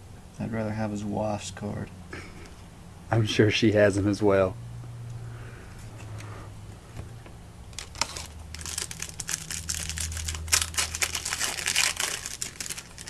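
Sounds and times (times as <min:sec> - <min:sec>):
foil wrapper crinkling and tearing: 0:07.7 - 0:13.0.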